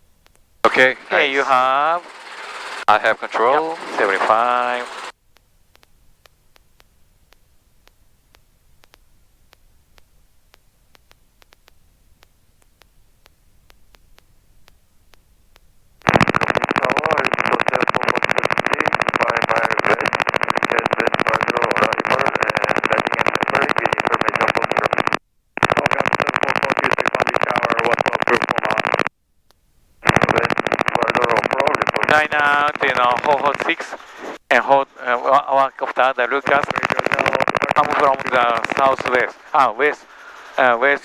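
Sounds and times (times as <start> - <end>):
radio static rushing noise: 0.6 - 5.2, 16.0 - 29.1, 30.0 - 41.0
faint ticks: 4.7 - 34.4, 36.3 - 41.0.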